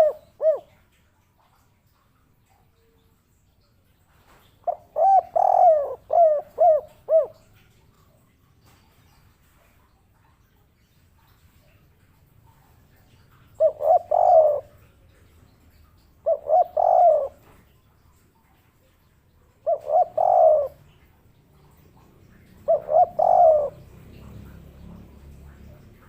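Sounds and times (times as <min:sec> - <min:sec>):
dove cooing: 0:00.0 - 0:00.8, 0:04.4 - 0:07.8, 0:13.0 - 0:17.7, 0:19.6 - 0:26.0.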